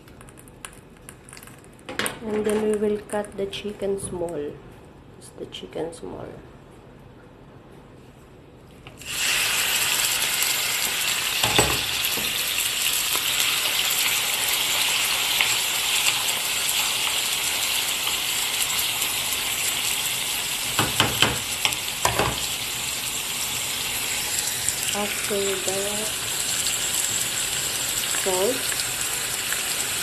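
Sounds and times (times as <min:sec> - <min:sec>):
chicken sizzling in oil: 0:09.0 - 0:30.0
utensil knocking against pan: 0:20.8 - 0:21.4.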